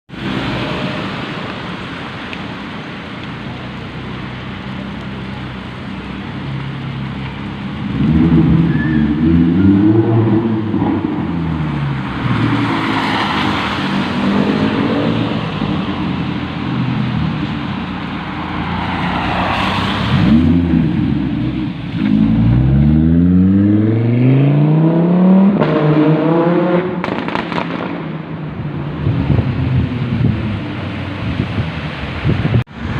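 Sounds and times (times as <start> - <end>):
sports car engine revving: 7.7 - 15.8, 20.1 - 28.0.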